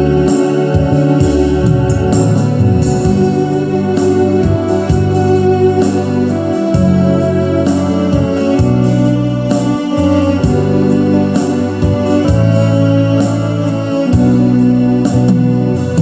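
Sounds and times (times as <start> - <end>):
electronic keyboard chords: 0.0 - 16.0.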